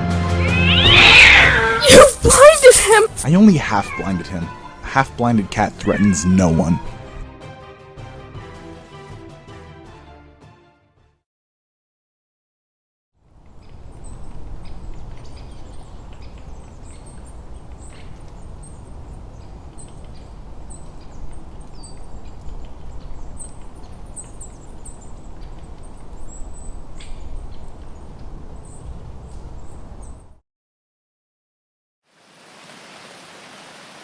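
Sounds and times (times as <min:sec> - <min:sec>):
high bird chirps: 0:00.3 - 0:02.6, 0:13.6 - 0:30.2.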